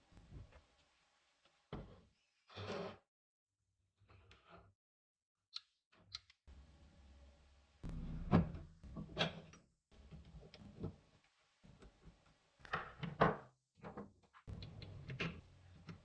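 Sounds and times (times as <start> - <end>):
low steady hum: 6.5 - 11.0.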